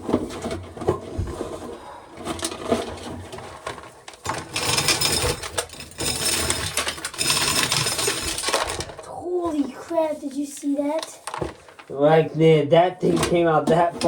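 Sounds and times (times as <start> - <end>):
corn sheller rattling and grinding: 0.0 - 9.6.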